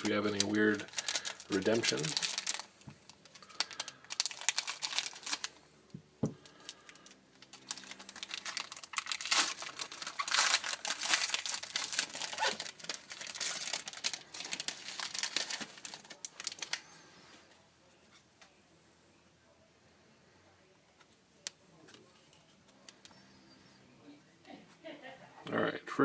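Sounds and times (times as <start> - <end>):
plastic packaging crinkling and tearing: 0.0 - 5.6, 6.4 - 17.0.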